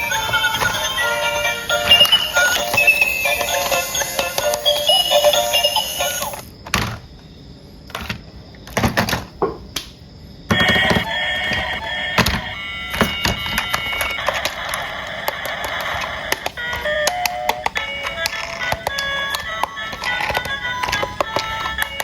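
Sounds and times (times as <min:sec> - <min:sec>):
toy electronic beeping tune: 0:00.0 - 0:06.5, 0:10.6 - 0:22.0
plastic clicks and knocks: 0:15.4 - 0:22.0.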